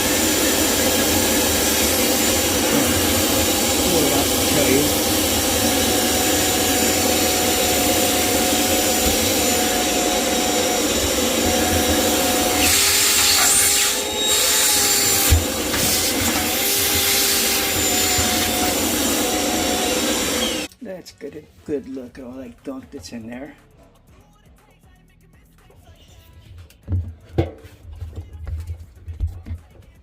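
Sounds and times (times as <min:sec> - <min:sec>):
vacuum cleaner running: 0:00.0 - 0:20.7.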